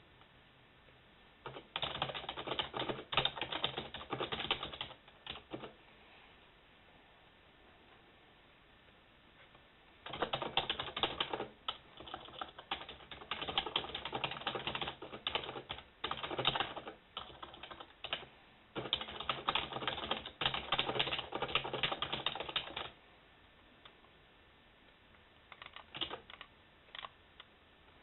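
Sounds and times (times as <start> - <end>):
computer keyboard typing: 1.4 - 5.8, 10.0 - 23.0, 25.5 - 27.1.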